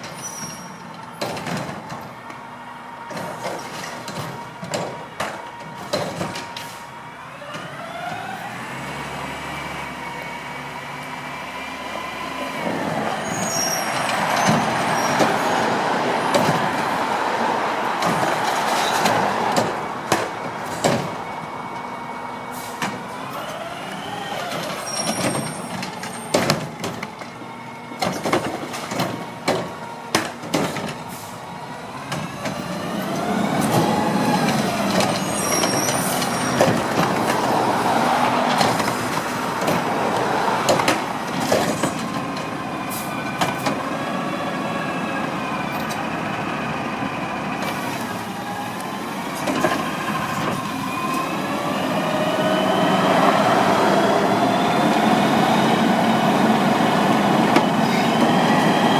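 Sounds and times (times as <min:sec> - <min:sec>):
garbage truck engine revving: 0:02.9 - 0:58.9.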